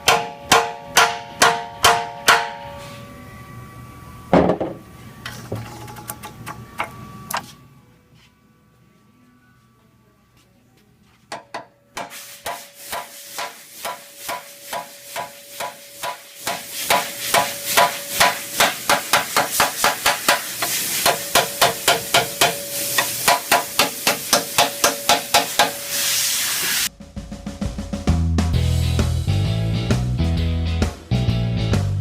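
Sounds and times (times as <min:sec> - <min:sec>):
hammer striking steel rail: 0:00.0 - 0:02.9, 0:11.3 - 0:25.8
metallic ringing: 0:00.0 - 0:06.0.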